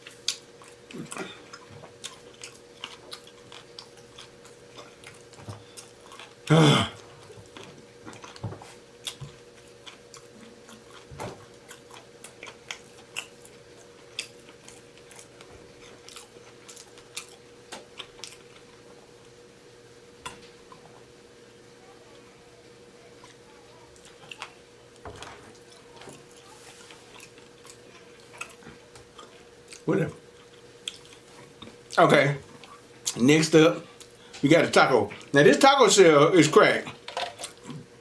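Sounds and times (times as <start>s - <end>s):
person chewing and crunching food: 0.0s - 19.4s, 23.1s - 34.4s, 35.1s - 35.4s, 36.8s - 38.0s
vocal groan: 6.5s - 7.0s.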